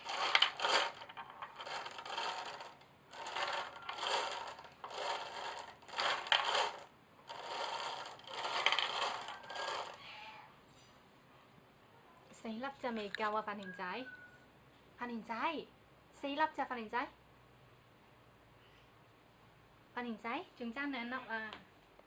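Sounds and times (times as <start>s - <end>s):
small hard objects rattling: 0.0s - 10.0s.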